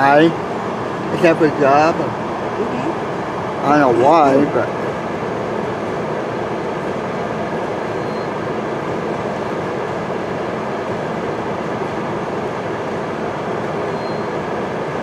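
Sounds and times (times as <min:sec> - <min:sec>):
freight train passing: 0:00.0 - 0:15.0
faint train squeal: 0:07.9 - 0:08.5, 0:13.8 - 0:14.5.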